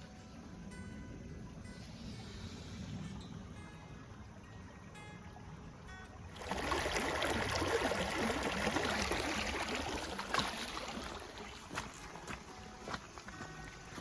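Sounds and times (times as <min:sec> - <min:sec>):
water running and gurgling: 0:06.3 - 0:14.0.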